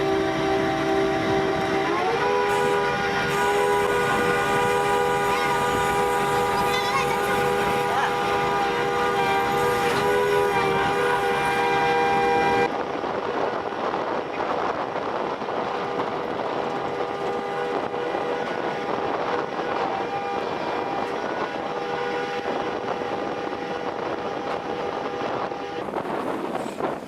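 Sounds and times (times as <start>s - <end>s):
machinery humming: 0.0s - 12.7s.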